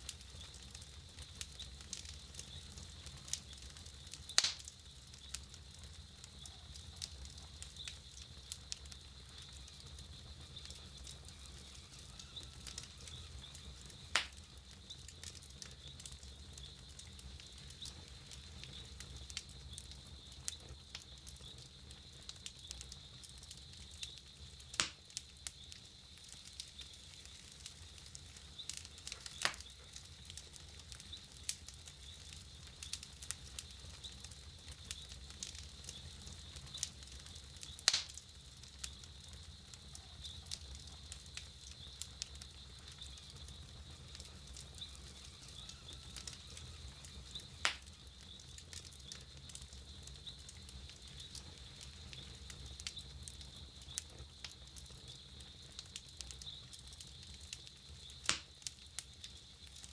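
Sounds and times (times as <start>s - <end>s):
campfire crackling: 0.0s - 59.9s
loud fire pops: 0.0s - 59.9s.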